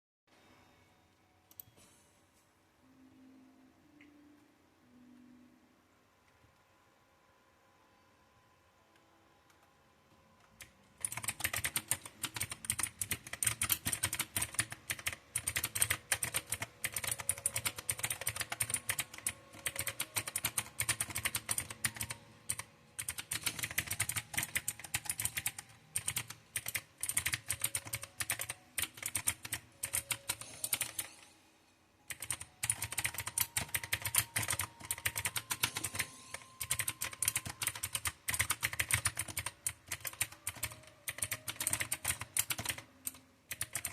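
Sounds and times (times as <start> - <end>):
mechanical keyboard typing: 10.4 - 31.2, 32.1 - 43.9.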